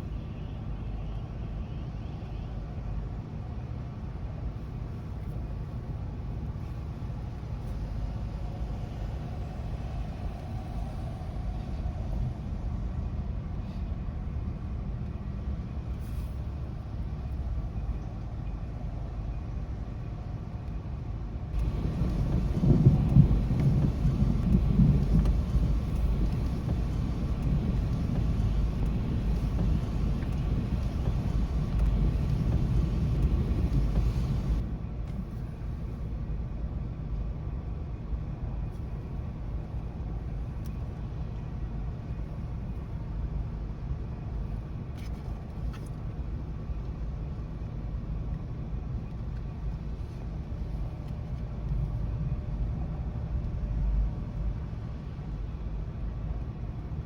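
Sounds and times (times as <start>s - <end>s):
thunder rumbling: 21.6s - 34.6s.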